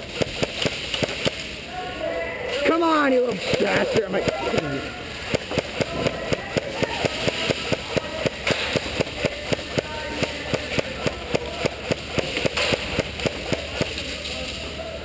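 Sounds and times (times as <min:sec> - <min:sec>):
airsoft gun rapid shots: 0:00.0 - 0:01.6, 0:03.4 - 0:14.2.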